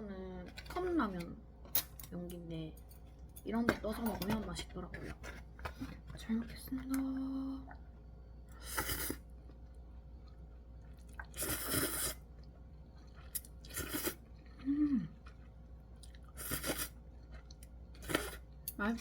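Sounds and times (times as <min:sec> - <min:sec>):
low hum of voice: 0:06.2 - 0:07.8, 0:14.6 - 0:15.2
noodle slurping: 0:08.5 - 0:09.2, 0:11.1 - 0:12.3, 0:13.3 - 0:14.6, 0:16.3 - 0:17.0
chewing: 0:09.4 - 0:11.5, 0:12.4 - 0:18.4.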